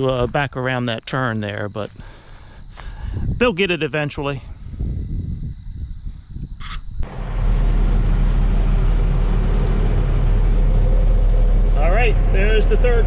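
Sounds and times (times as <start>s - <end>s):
uneven rumble: 4.5s - 13.0s
vehicle engine running: 7.0s - 13.0s.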